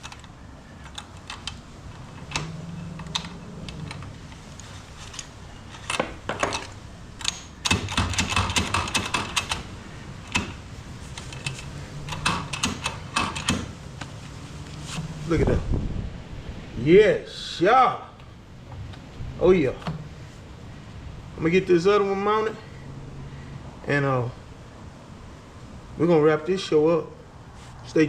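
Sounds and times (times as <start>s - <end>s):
ratchet strap clicking: 0.0s - 14.1s.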